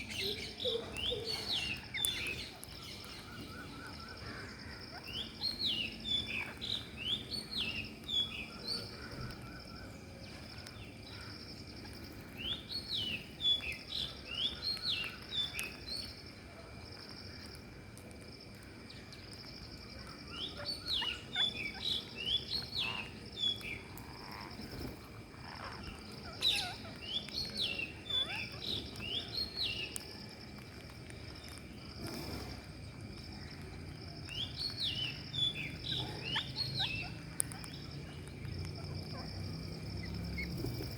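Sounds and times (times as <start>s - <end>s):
parakeets calling shrilly: 0.0s - 9.4s, 20.3s - 30.0s, 34.7s - 37.9s, 38.7s - 40.9s.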